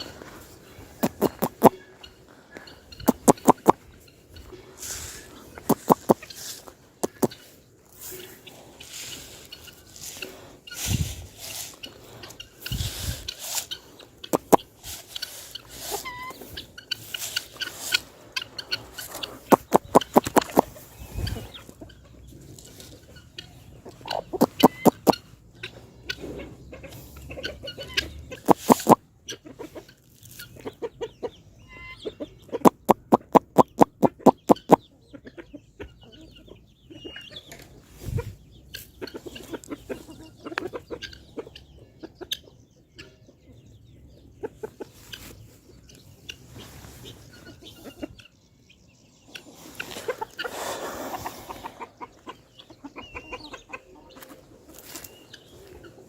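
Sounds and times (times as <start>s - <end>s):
chickens clucking: 0.0s - 56.0s
quick sharp taps: 32.7s - 34.8s.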